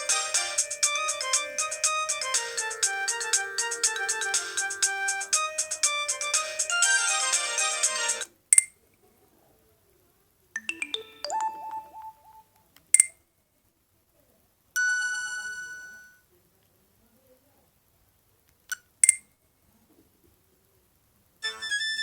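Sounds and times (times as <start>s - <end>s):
phone ringtone melody: 0.0s - 8.3s, 10.6s - 12.5s.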